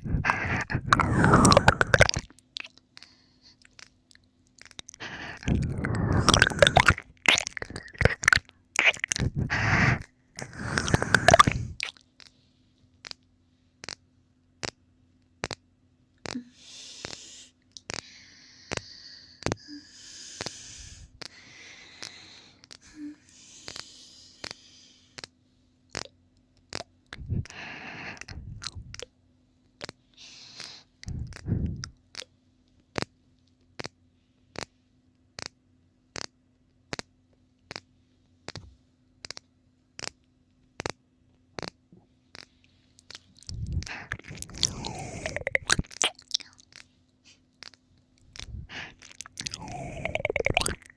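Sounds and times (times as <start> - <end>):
soft breathy sounds: 0.0 - 2.2, 4.9 - 8.4, 9.1 - 11.9, 16.3 - 25.3, 27.1 - 29.1, 30.1 - 31.9, 42.5 - 47.5, 48.2 - 50.9
wet licking mouth sounds: 0.0 - 2.8, 3.6 - 12.0, 42.4 - 46.9, 47.6 - 50.9
low steady hum: 0.0 - 11.9, 41.9 - 47.2.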